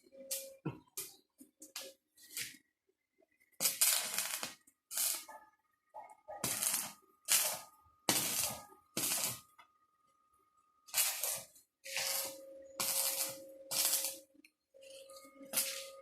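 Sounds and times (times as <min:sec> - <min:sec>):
harsh metalworking on steel bars: 0:10.9 - 0:16.0.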